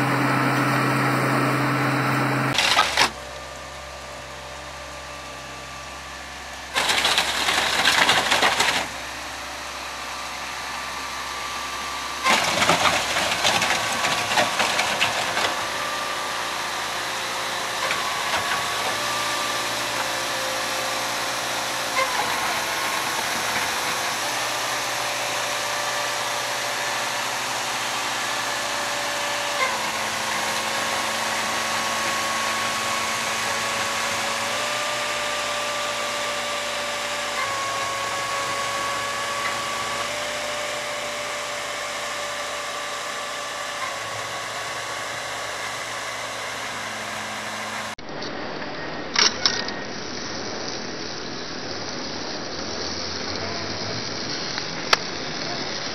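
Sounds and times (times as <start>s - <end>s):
machinery motor whining hum: 0.0s - 48.1s
machinery rattling bursts: 2.5s - 3.2s, 6.7s - 9.4s, 12.1s - 47.8s.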